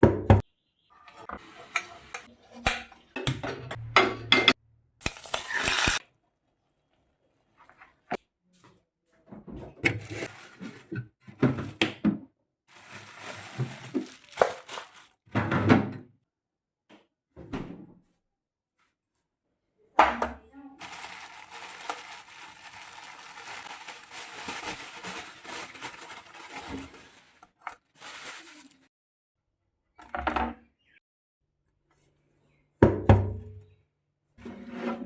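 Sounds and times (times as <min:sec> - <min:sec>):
pots and pans clattering: 0:01.4 - 0:04.6.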